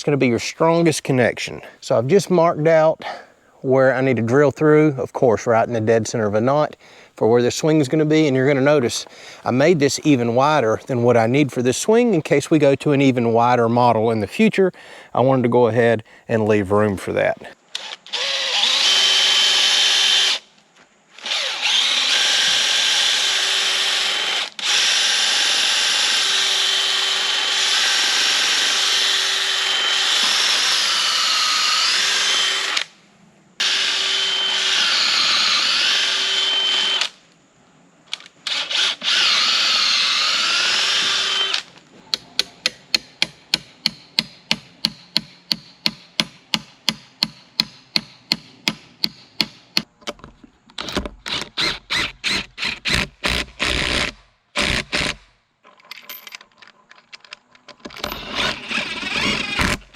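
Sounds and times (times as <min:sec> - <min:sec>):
power drill boring through wood: 0:17.8 - 0:20.4, 0:21.2 - 0:32.9, 0:33.6 - 0:37.2, 0:38.5 - 0:41.7, 0:51.3 - 0:55.2, 0:57.9 - 0:59.9.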